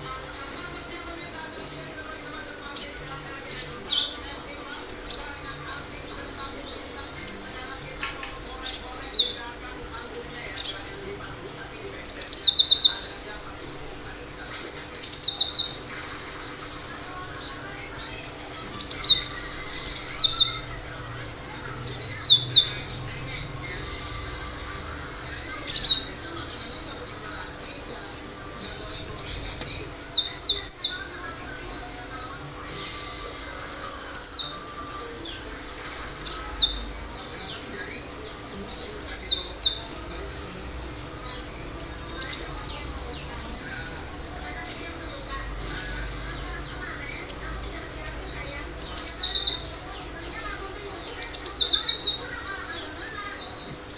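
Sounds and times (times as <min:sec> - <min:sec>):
bird singing whistled notes: 0:18.6 - 0:26.6.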